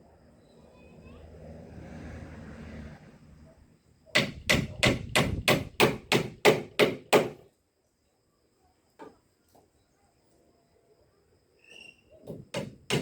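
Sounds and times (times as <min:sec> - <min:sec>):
hammer striking wood: 0:04.1 - 0:07.4, 0:12.3 - 0:13.0.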